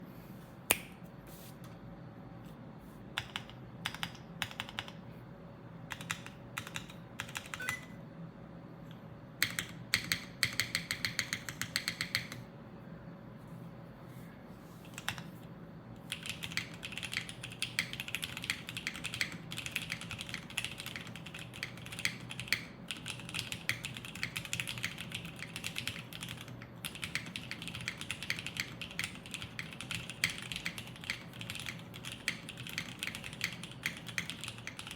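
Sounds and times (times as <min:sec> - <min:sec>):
mechanical keyboard typing: 0:03.2 - 0:05.0, 0:05.9 - 0:07.8, 0:09.4 - 0:12.4, 0:14.9 - 0:15.3, 0:16.0 - 0:34.9.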